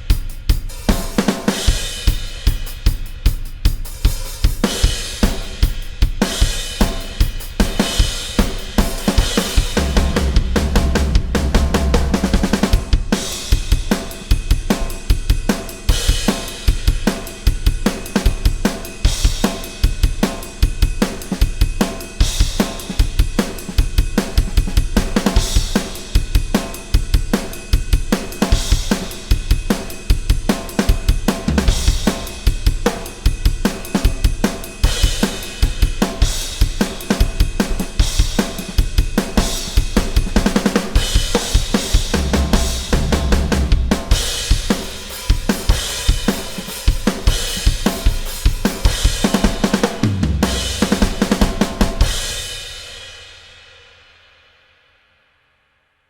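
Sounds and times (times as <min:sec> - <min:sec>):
rock drum groove: 0:00.0 - 0:53.7
cymbal crashes: 0:28.2 - 0:37.0.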